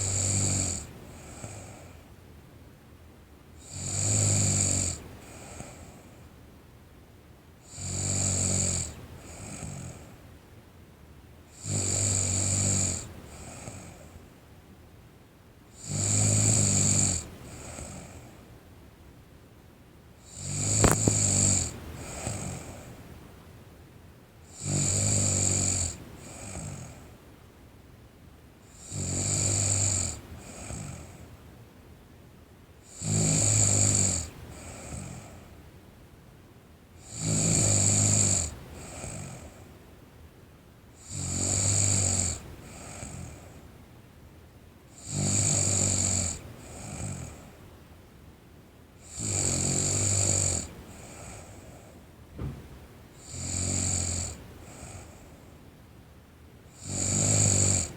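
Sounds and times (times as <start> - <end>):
girl snoring: 0.0 - 1.9, 7.7 - 10.1, 11.6 - 14.0, 15.8 - 18.3, 20.3 - 22.9, 24.5 - 27.0, 28.7 - 31.2, 32.9 - 35.4, 37.0 - 39.5, 41.0 - 43.5, 45.0 - 47.5, 49.0 - 51.7, 53.2 - 55.2, 56.7 - 57.9
soft breath: 20.8 - 23.2, 34.4 - 35.6, 54.3 - 55.7.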